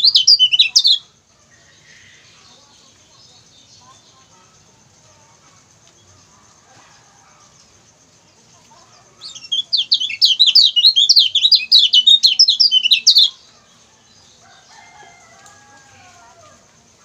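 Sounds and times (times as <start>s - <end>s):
bird singing high sharp chirps: 0.0s - 1.0s, 9.2s - 13.4s.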